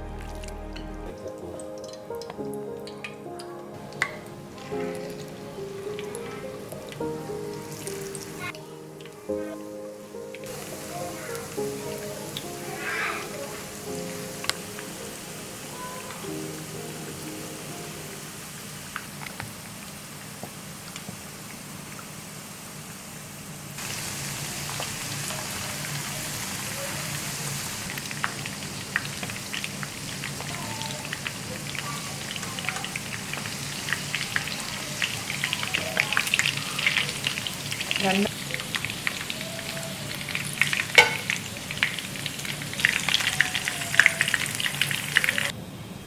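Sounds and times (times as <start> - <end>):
chicken frying in hot oil: 10.4 - 45.6.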